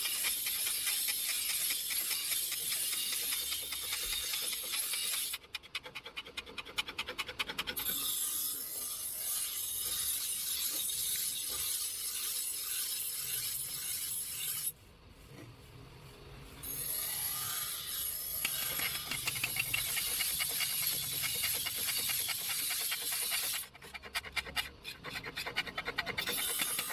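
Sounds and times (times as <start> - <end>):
strokes on metal sickle blade: 0.0 - 8.0, 18.4 - 26.9
rough scraping on metal: 16.7 - 26.9.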